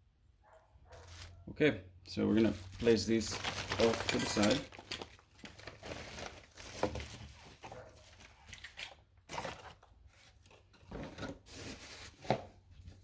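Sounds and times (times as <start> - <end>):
packaging rustling: 2.2 - 12.3.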